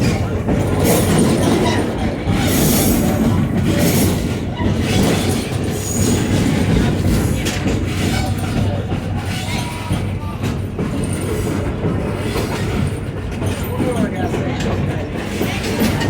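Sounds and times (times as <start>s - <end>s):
train wheels rumbling on rail: 0.0s - 16.0s.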